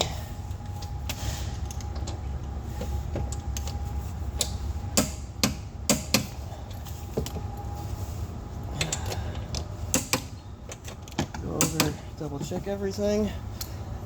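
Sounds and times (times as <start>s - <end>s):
steady low hum: 0.0s - 14.0s
hand tools clicking and knocking: 4.4s - 7.4s, 8.8s - 12.9s.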